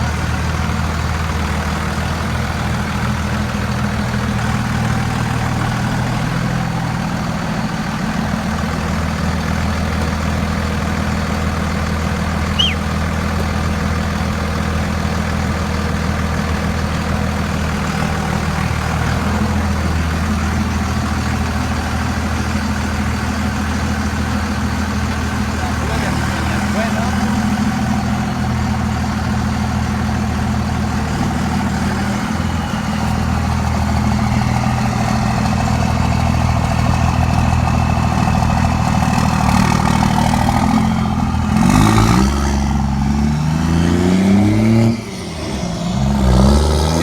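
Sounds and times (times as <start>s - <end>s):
diesel engine idling: 0.0s - 47.0s
high falling chirp: 12.5s - 13.0s.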